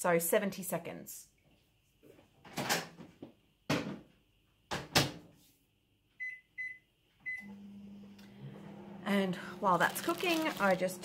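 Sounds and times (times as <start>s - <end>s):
microwave humming: 7.3s - 11.0s.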